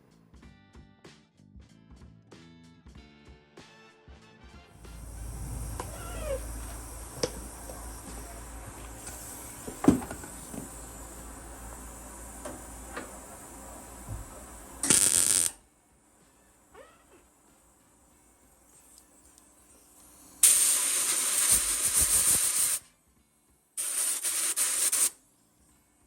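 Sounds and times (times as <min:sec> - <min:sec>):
low rumble: 0:04.8 - 0:09.6
loud burst of hiss: 0:04.8 - 0:15.6, 0:20.1 - 0:22.8, 0:23.8 - 0:25.2.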